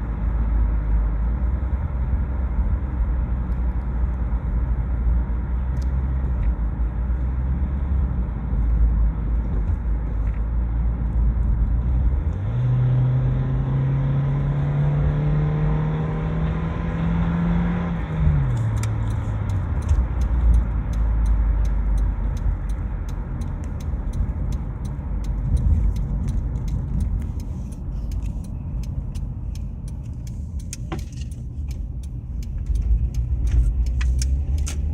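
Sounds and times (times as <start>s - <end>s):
car engine revving: 11.0s - 34.9s
light sharp clicks: 18.5s - 34.9s.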